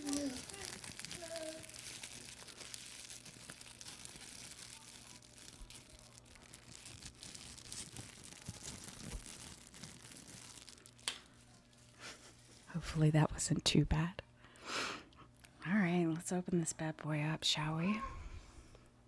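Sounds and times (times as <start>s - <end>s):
plastic wrapping tearing and crinkling: 0.0s - 12.7s.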